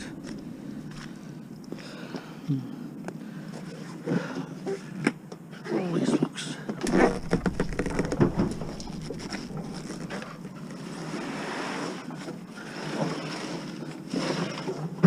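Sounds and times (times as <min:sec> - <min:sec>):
refrigerator knocks and clunks: 0:06.8 - 0:10.4.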